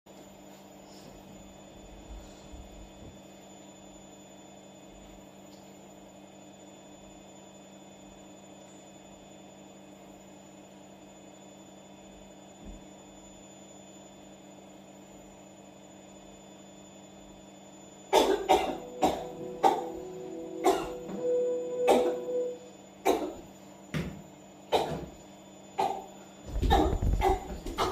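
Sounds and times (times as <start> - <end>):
low hum: 18.2 - 23.2
faint high-pitched whine: 18.2 - 23.4.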